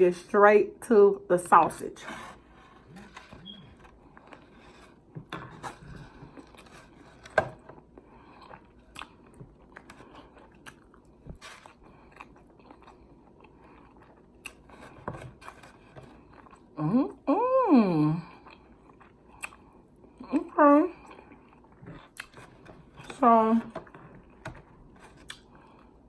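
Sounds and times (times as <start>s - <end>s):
chewing food close up: 2.8s - 17.2s, 18.3s - 20.3s, 20.9s - 23.1s.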